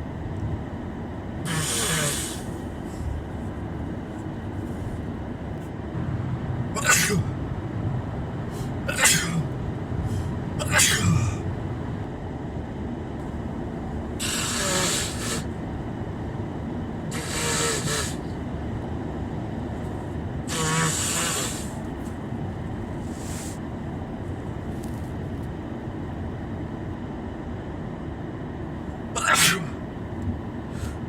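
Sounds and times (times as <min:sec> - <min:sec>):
car cabin rumble: 0:00.0 - 0:23.2.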